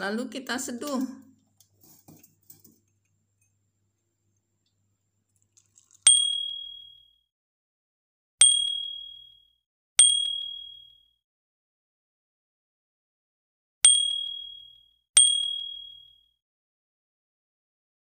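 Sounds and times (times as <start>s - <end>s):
high ringing dings: 6.1s - 7.2s, 8.4s - 11.1s, 13.9s - 16.3s.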